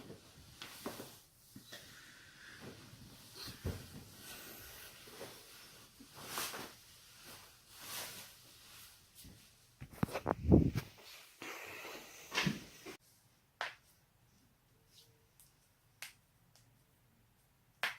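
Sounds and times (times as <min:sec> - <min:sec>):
body movement rustling: 0:00.0 - 0:01.8, 0:02.4 - 0:11.3.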